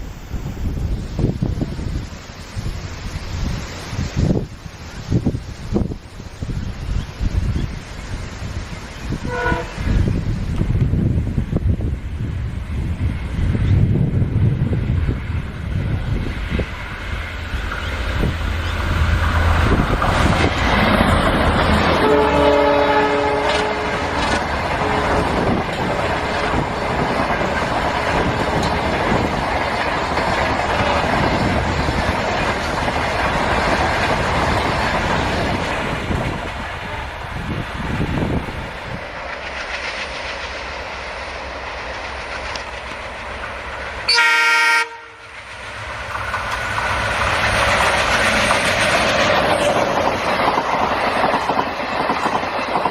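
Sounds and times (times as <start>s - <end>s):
train air horn: 9.2s - 10.0s, 21.9s - 25.4s, 44.1s - 45.3s
train wheels clattering: 16.4s - 44.1s, 45.3s - 52.9s.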